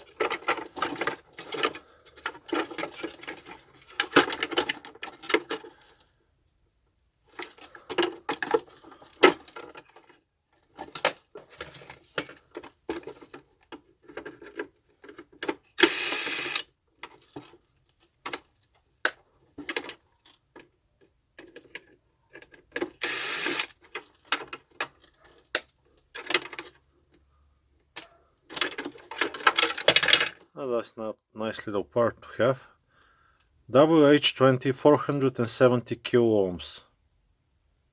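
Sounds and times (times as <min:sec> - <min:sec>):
plastic parts clicking and rattling: 0:00.0 - 0:06.2, 0:07.2 - 0:30.5.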